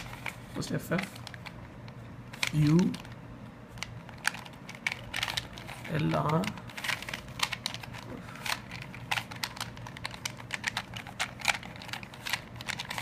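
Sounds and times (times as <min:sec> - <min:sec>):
puzzle cube plastic clicks: 0:02.3 - 0:03.1, 0:03.7 - 0:13.0.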